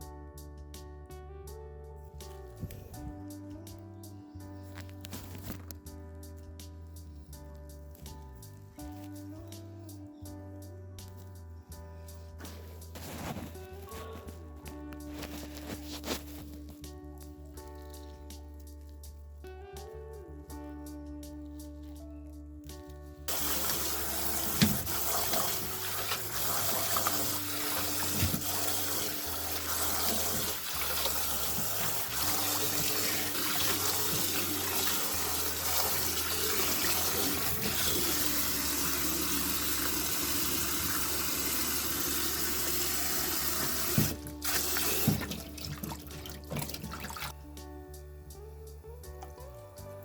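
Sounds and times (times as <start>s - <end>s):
background music: 0.0s - 50.0s
tap water running into sink: 23.3s - 47.4s.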